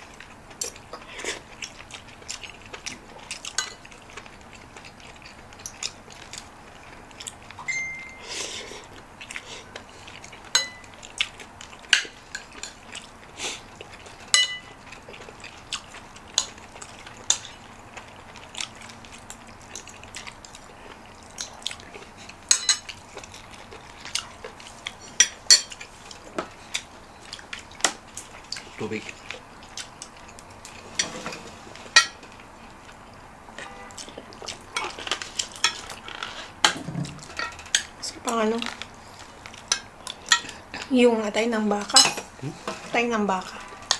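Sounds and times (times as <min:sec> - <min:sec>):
cutlery clinking on dishes: 0:10.5 - 0:11.0, 0:14.3 - 0:14.8, 0:22.5 - 0:23.3, 0:25.1 - 0:25.8, 0:30.9 - 0:32.2, 0:34.8 - 0:37.9, 0:41.9 - 0:42.9.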